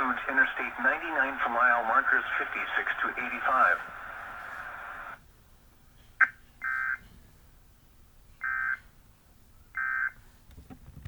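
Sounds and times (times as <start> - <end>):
bursts of data tones: 6.6 - 7.0.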